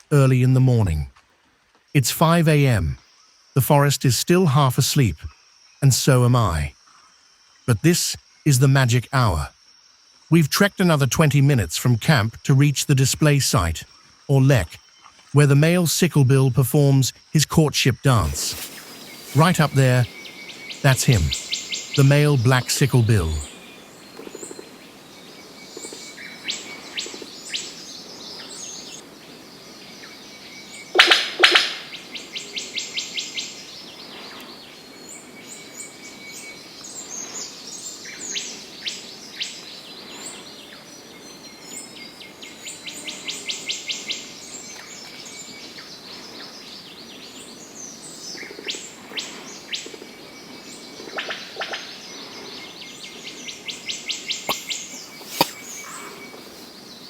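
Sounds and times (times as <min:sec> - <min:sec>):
forest birds calling: 0:01.7 - 0:57.0
loud sharp bird call: 0:18.2 - 0:23.6, 0:54.3 - 0:57.0.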